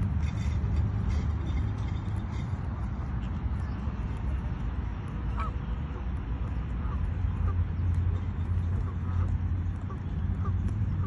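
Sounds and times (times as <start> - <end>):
steady low rumble: 0.0 - 11.0
geese honking: 5.2 - 11.0.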